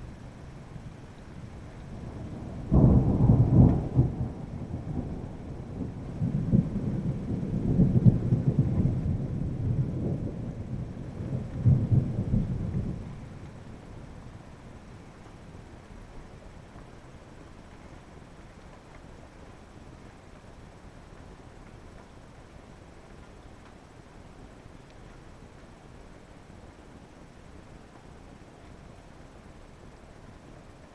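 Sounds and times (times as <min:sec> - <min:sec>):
rolling thunder rumbles: 0:01.0 - 0:15.4
thunder crack: 0:02.2 - 0:13.2.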